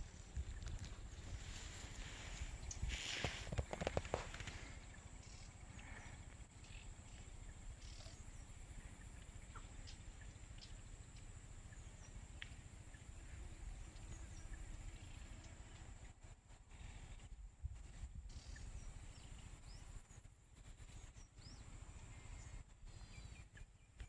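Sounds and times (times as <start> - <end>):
bird chirps: 4.7 - 13.1.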